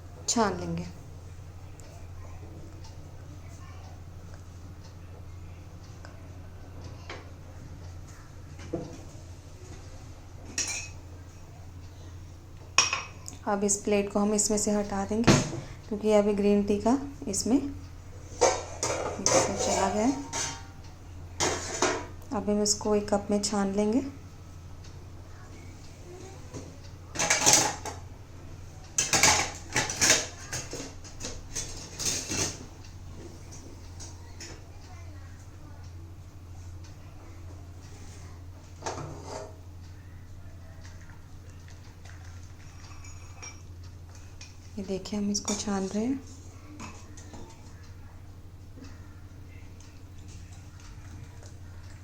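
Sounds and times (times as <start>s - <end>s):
dishes and pan clinking: 10.5s - 11.0s, 12.8s - 13.2s, 18.4s - 20.7s
kitchenware scraping: 10.5s - 11.0s, 18.3s - 20.7s, 21.4s - 22.1s, 29.0s - 32.7s, 38.8s - 39.6s.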